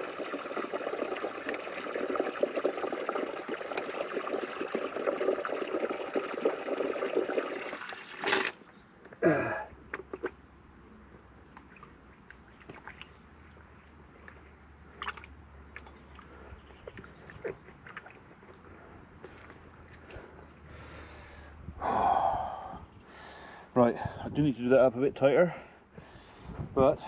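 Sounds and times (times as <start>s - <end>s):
water splashing from broken pipe: 0.0s - 8.6s.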